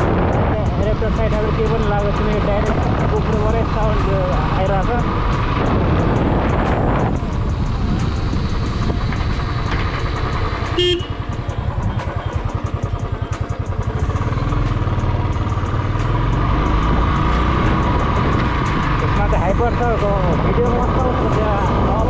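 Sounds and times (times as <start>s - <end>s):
motorcycle engine thumping: 0.0s - 16.1s
horn beep: 10.8s - 11.3s.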